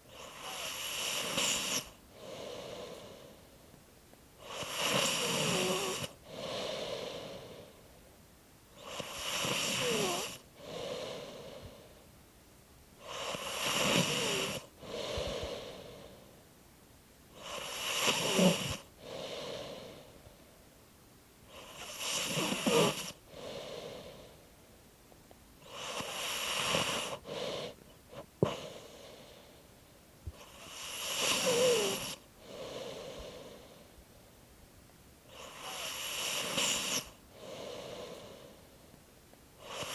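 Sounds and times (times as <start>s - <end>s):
person snoring: 0.1s - 3.4s, 4.4s - 7.8s, 8.8s - 11.9s, 13.0s - 16.3s, 17.4s - 20.1s, 21.5s - 24.3s, 25.6s - 29.5s, 30.3s - 33.8s, 35.3s - 38.6s, 39.6s - 39.9s.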